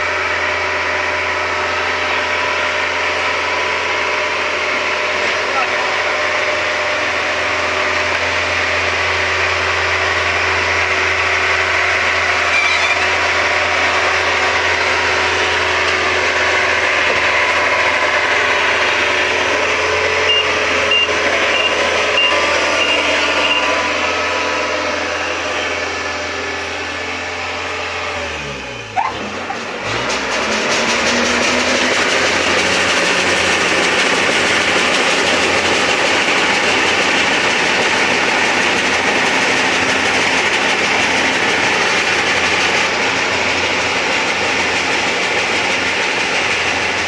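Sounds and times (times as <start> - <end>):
combine harvester running: 0.0 - 47.0
high beeps: 20.2 - 23.8.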